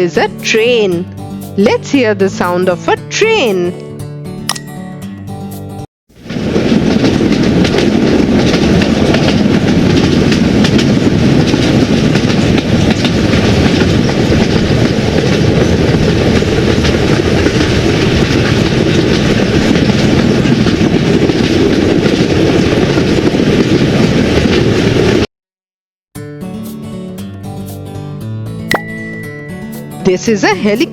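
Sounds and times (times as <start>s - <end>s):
train wheels on rails: 6.1s - 25.3s.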